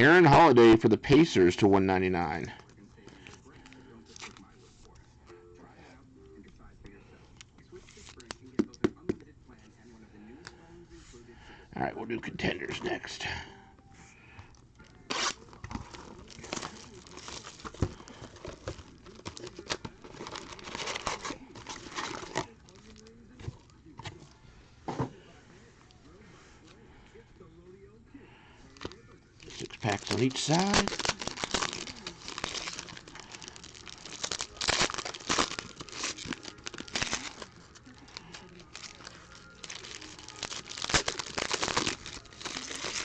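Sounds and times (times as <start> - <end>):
plastic wrapping crinkling and tearing: 3.5 - 4.5, 15.0 - 23.2, 28.7 - 43.0.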